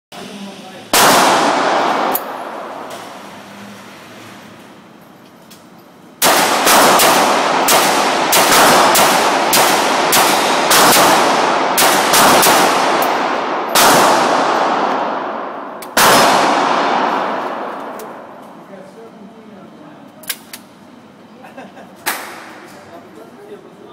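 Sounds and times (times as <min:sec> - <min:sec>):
gunshots with reverberant tails: 0:00.9 - 0:03.2, 0:06.2 - 0:18.4.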